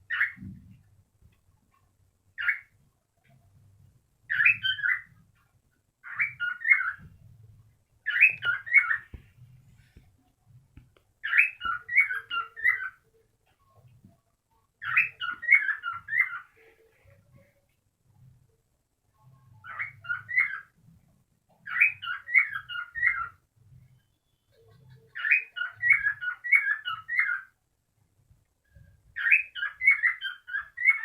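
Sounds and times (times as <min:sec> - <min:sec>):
cockatiel chirping: 0:00.1 - 0:00.5, 0:02.4 - 0:02.8, 0:04.3 - 0:05.2, 0:06.0 - 0:07.1, 0:08.0 - 0:09.2, 0:11.2 - 0:13.1, 0:14.8 - 0:16.7, 0:19.5 - 0:20.7, 0:21.6 - 0:23.4, 0:24.0 - 0:27.5, 0:29.2 - 0:31.0.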